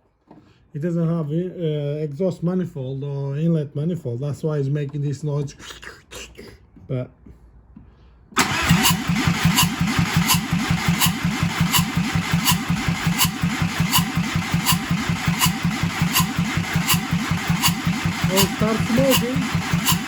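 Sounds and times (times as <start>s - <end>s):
diesel engine cranking on starter: 8.4s - 20.0s
sharp ticking: 8.6s - 20.0s.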